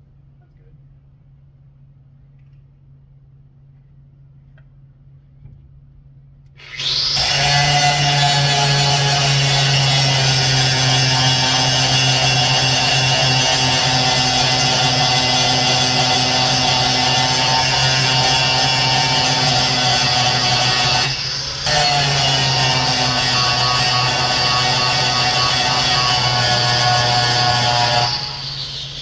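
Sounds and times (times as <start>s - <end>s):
electric grinder whining: 6.6s - 29.0s.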